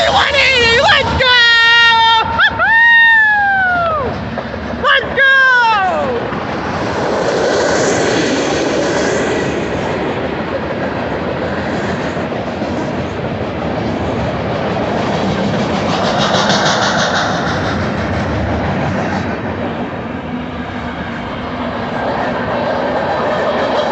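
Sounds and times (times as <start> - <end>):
freight train rumbling past: 0.0 - 23.9
train wheels clattering: 6.3 - 19.6.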